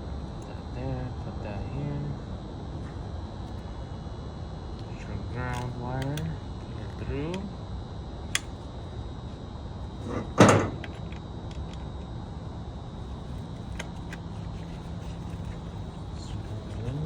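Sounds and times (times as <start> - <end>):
steady low hum: 0.0 - 17.0
loud clunk: 10.4 - 10.8.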